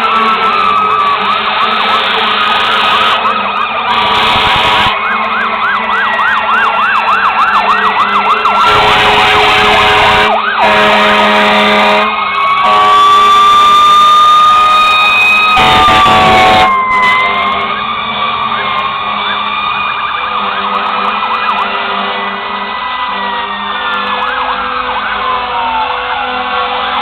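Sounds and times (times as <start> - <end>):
fire truck sirens: 0.0 - 27.0
horn blasts: 1.4 - 5.3, 8.6 - 13.9, 15.5 - 18.4, 20.3 - 27.0.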